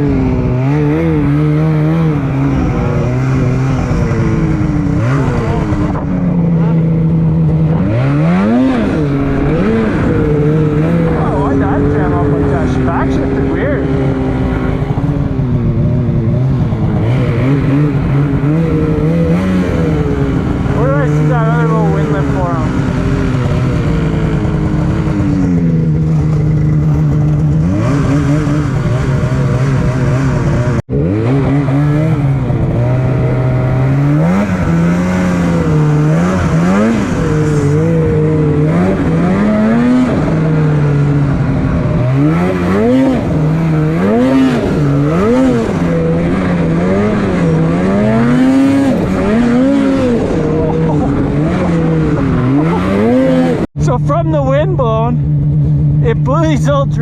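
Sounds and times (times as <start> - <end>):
snowmobile engine revving: 0.0 - 57.0.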